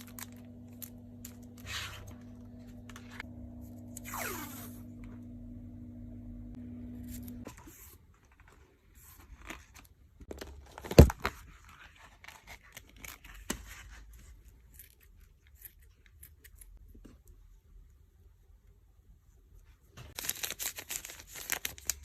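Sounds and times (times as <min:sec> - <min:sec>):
low hum: 0:00.0 - 0:07.6.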